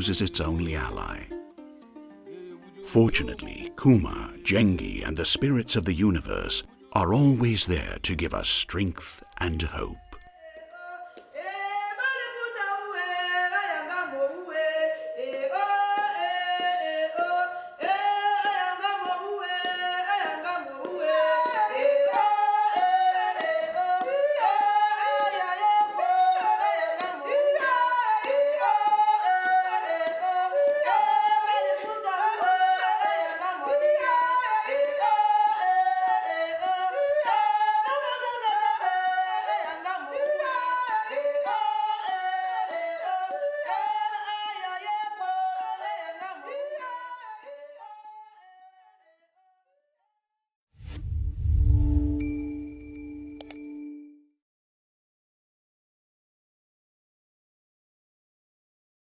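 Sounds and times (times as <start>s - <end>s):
voices singing yodelled parts: 0.0s - 1.4s, 2.4s - 10.2s.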